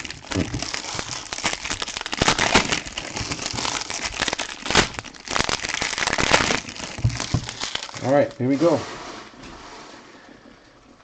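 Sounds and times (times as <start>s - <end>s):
card wrappers crinkling: 0.0s - 8.4s.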